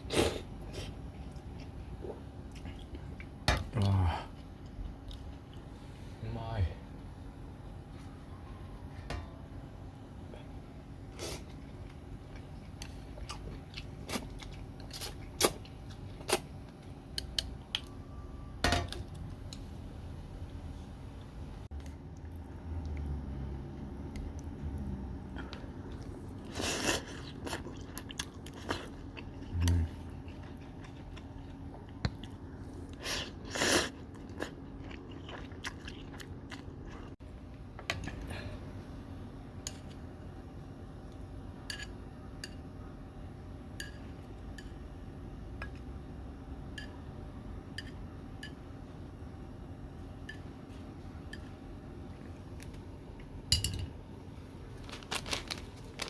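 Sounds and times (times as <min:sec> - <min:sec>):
faint steady hum: 0:00.0 - 0:56.0
person chewing with wet clicks: 0:01.1 - 0:05.7, 0:11.5 - 0:18.0, 0:21.7 - 0:23.2, 0:23.8 - 0:26.1, 0:26.9 - 0:33.0, 0:34.0 - 0:37.2, 0:45.6 - 0:46.0.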